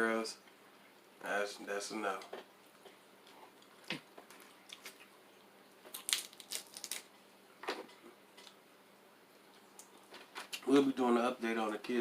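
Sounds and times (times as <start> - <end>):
close-up eating crunches: 5.8 - 7.1.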